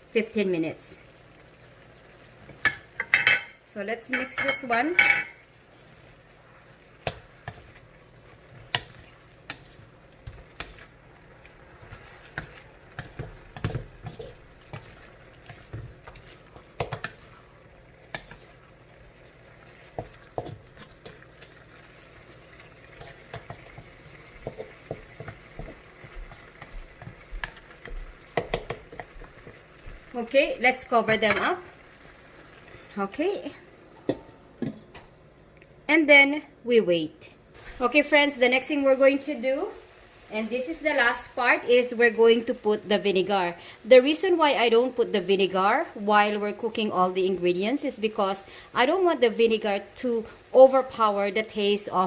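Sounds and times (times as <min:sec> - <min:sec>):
faint sizzle of simmering sauce: 0:00.0 - 0:52.0
utensil scraping and knocking pot: 0:07.0 - 0:11.0, 0:11.8 - 0:21.8, 0:22.6 - 0:30.1.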